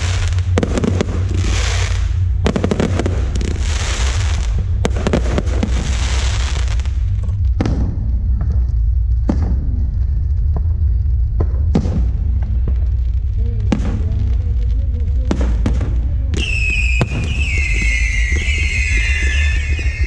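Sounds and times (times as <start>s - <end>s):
loud music with heavy bass: 0.0s - 8.0s
high wavering whistles: 16.4s - 20.0s.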